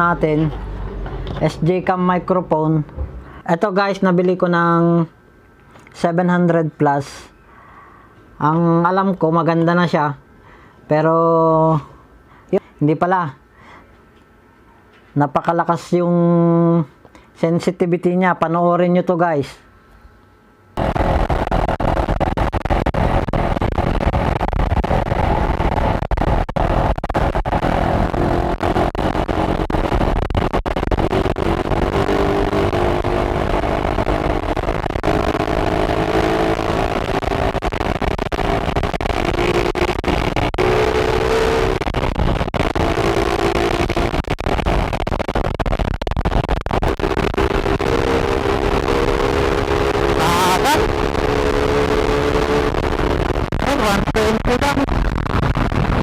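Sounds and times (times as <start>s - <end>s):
vehicle engine running: 0.0s - 3.4s, 20.8s - 56.0s.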